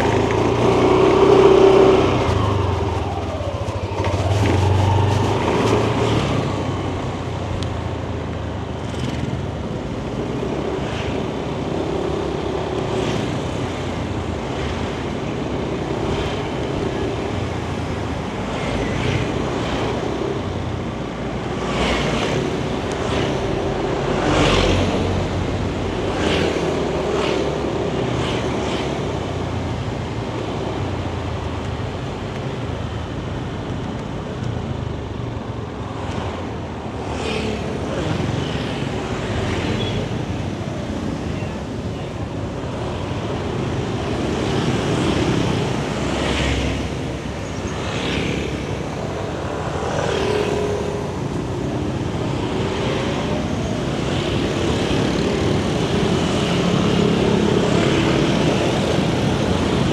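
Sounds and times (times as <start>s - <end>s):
scooter engine running: 0.0s - 6.7s
road and traffic noise: 0.0s - 59.9s.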